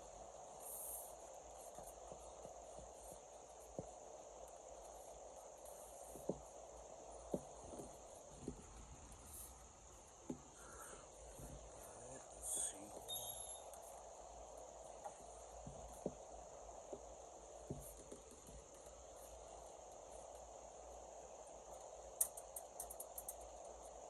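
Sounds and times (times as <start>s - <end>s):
faint steady hiss: 0.0s - 24.0s
light sharp clicks: 22.2s - 23.5s.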